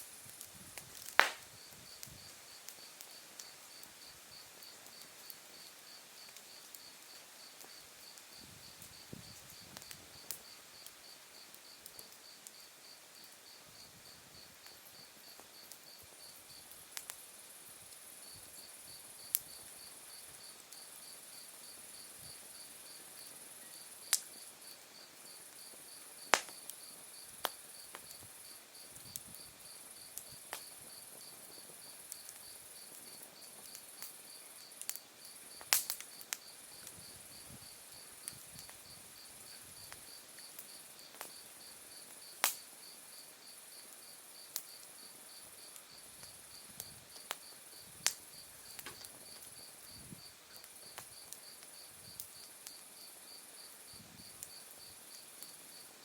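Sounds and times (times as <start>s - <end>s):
wood fire crackling and popping: 0.0s - 13.3s, 14.6s - 17.2s, 22.3s - 42.8s, 45.7s - 52.8s
insect high continuous trill: 1.5s - 56.0s.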